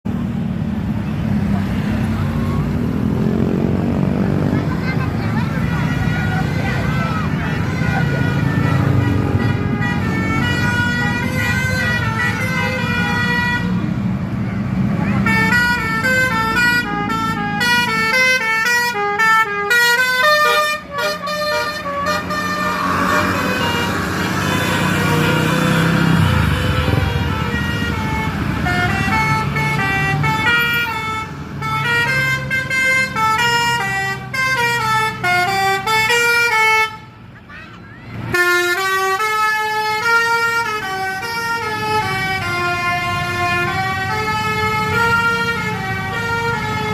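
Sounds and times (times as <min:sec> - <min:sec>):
low rumble of engines: 0:00.0 - 0:46.9
multi-tone bus horn tune: 0:04.6 - 0:14.0, 0:15.0 - 0:37.4, 0:38.2 - 0:46.9.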